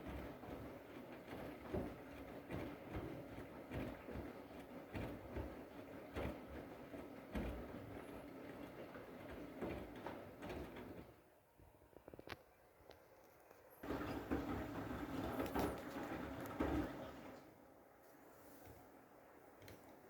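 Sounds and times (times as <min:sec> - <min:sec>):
washing machine drum tumbling: 0:00.0 - 0:11.2, 0:13.8 - 0:17.4.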